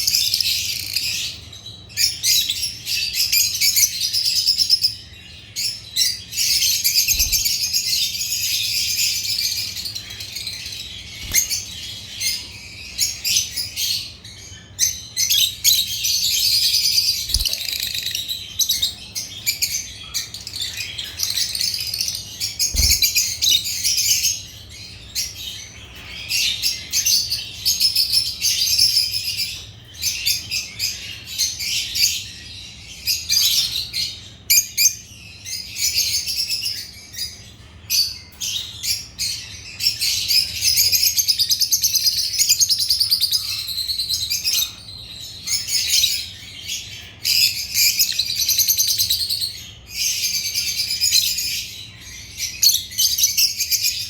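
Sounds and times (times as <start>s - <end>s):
lovebirds chirping: 0.0s - 54.0s.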